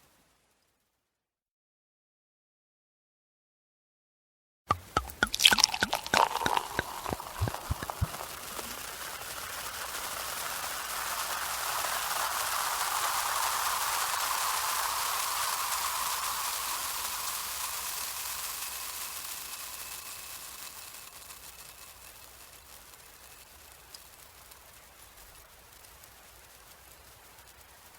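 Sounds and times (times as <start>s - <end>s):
splashy clicks: 4.7s - 9.4s
champagne bubbles fizzing: 4.7s - 21.4s.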